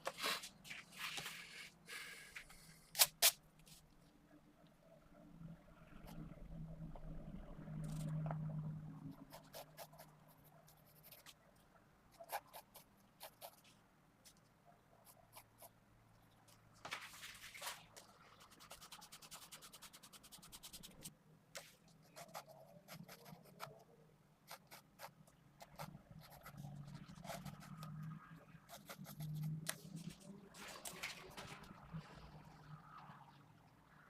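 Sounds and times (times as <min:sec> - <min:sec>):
pencil scratching on paper: 0:09.3 - 0:11.4, 0:18.6 - 0:23.8, 0:24.5 - 0:27.9, 0:28.7 - 0:29.5.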